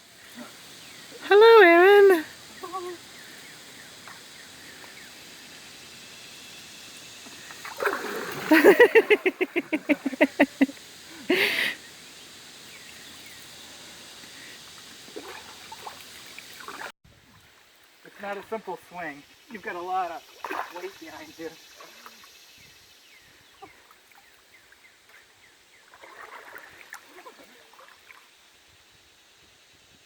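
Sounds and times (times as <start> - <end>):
river water flowing: 1.2 - 16.9.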